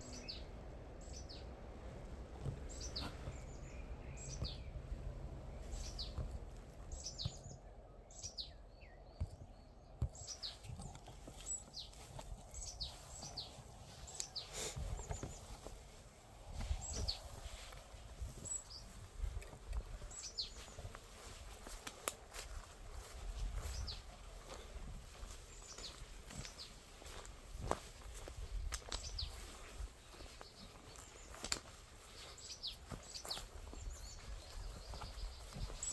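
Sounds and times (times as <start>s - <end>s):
small birds chirping: 0.0s - 35.9s
small birds whistling: 2.7s - 4.8s, 5.6s - 6.2s, 6.9s - 9.2s.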